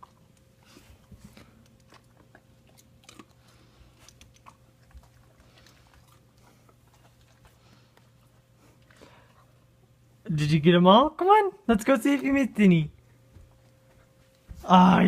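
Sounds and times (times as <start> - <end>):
dog crunching popcorn: 0.0 - 9.6.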